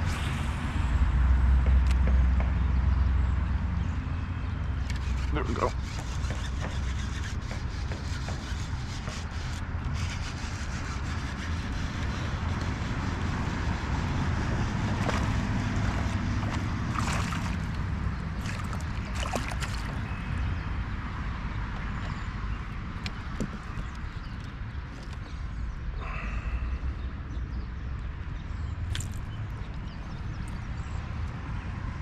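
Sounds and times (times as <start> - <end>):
wind rumble on microphone: 6.8 - 32.0
water sloshing around a kayak: 14.6 - 20.4.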